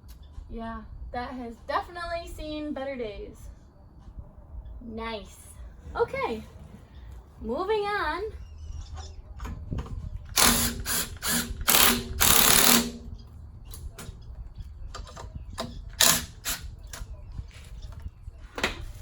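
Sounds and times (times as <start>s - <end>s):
hand ratchet clicking: 10.3s - 13.1s, 15.6s - 17.0s.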